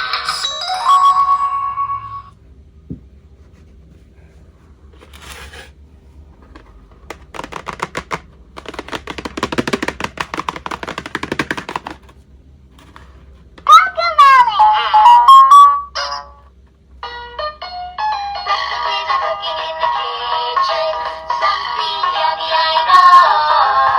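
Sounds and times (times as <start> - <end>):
toy electronic tune: 0.0 - 2.3, 14.3 - 16.4.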